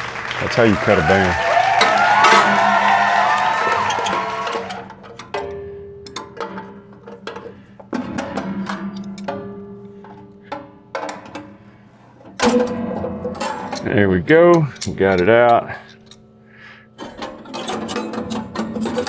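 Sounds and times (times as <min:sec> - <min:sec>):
metal clanks and clinks: 0:04.6 - 0:19.0.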